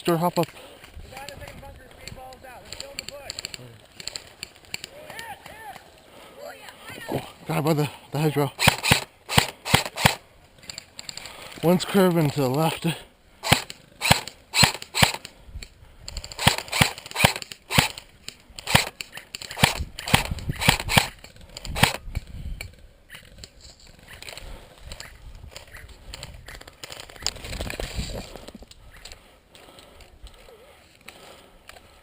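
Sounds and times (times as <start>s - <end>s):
airsoft rifle single shots: 8.6s - 10.2s, 13.4s - 15.3s.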